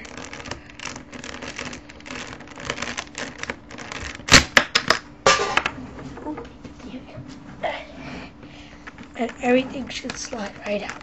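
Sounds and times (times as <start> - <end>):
plastic clicks and scrapes: 0.0 - 4.4, 8.8 - 11.0
loud sharp plastic clacks: 0.0 - 5.6.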